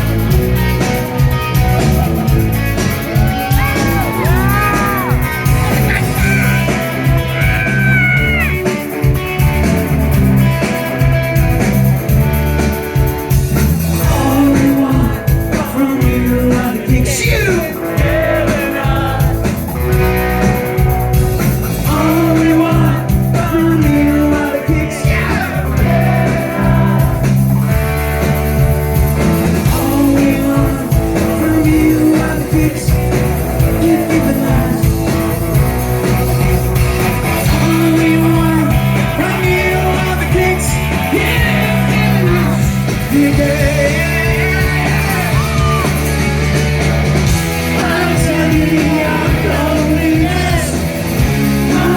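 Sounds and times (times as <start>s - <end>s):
bass guitar: 0.0s - 51.9s
drums: 0.0s - 51.9s
electric guitar: 0.0s - 51.9s
person singing: 3.2s - 8.7s, 14.0s - 19.4s, 21.8s - 27.2s, 29.7s - 35.1s, 37.4s - 46.2s, 47.7s - 50.9s, 51.5s - 51.9s.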